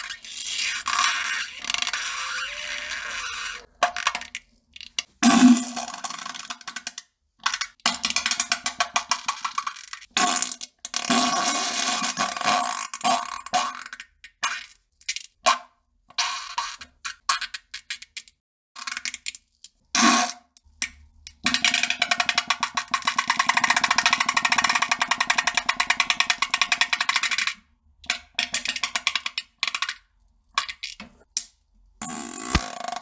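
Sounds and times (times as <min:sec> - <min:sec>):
farting: 0:00.5 - 0:03.7.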